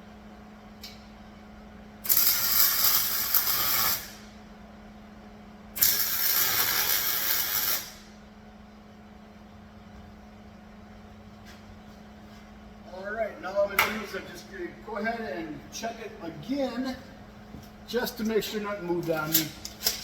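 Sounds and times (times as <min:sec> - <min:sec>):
welder crackling sizzle: 0:02.0 - 0:04.4, 0:05.8 - 0:08.2.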